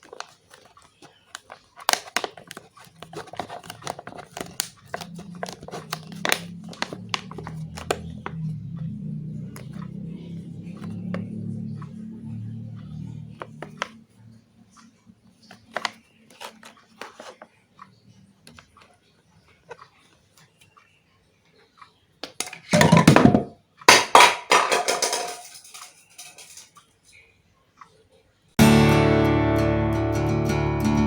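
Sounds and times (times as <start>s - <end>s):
small hard objects clicking: 0.0s - 8.4s, 23.9s - 26.8s
loud clattering: 22.7s - 26.7s.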